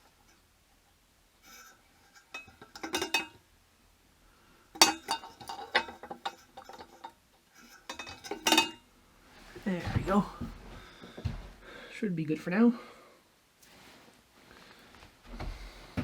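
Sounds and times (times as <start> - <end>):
metal and glass clinking: 1.6 - 3.4, 4.8 - 8.8.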